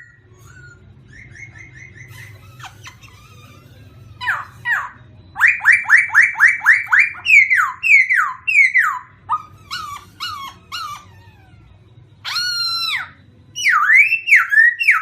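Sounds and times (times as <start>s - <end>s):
songbird whistled notes: 12.2s - 15.0s.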